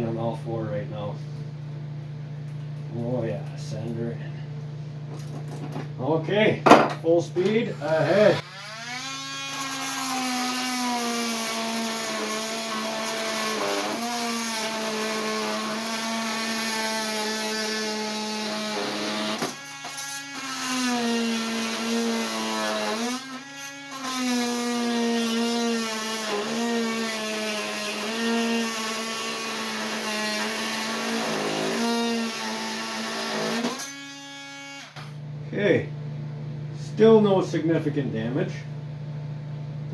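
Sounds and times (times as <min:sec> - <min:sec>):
oscillating multi-tool cutting steel: 0:07.7 - 0:35.0.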